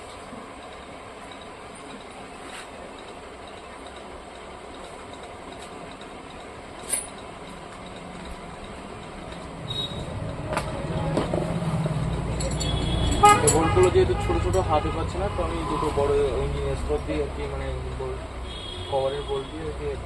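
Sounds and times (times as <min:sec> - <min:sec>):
motor vehicle rumbling: 0:00.0 - 0:20.0
steady background noise: 0:00.0 - 0:20.0.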